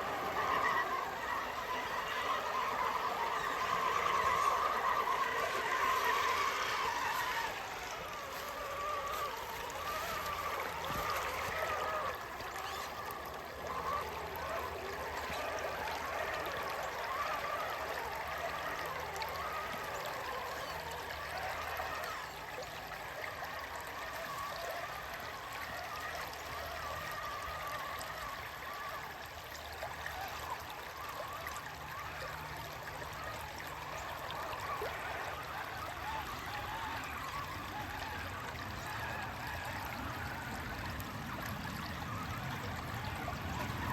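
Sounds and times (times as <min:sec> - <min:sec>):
creek water babbling: 0:00.0 - 0:43.9.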